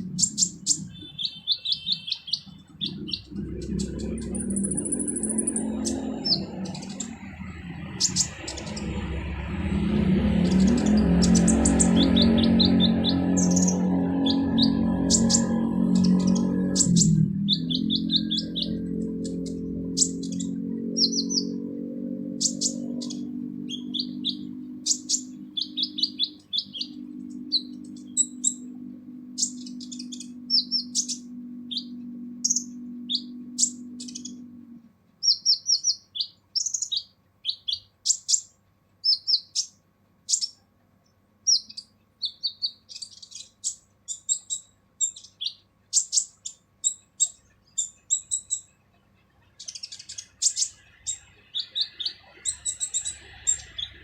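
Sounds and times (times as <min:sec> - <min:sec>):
steady low hum: 0:00.0 - 0:01.2, 0:02.5 - 0:37.4
bird chirping and trilling: 0:00.0 - 0:40.6, 0:41.4 - 0:54.0.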